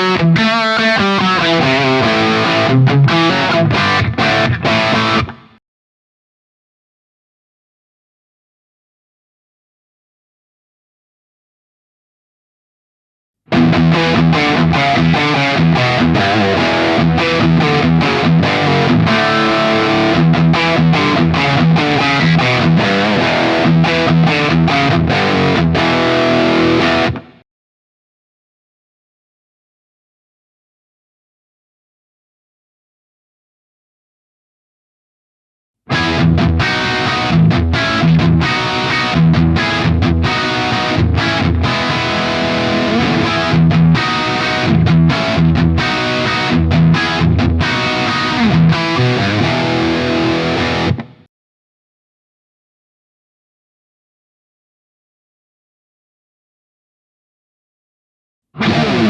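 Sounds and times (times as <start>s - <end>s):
distorted electric guitar riff: 0.0s - 5.6s, 13.5s - 27.4s, 35.9s - 51.3s, 58.6s - 59.0s.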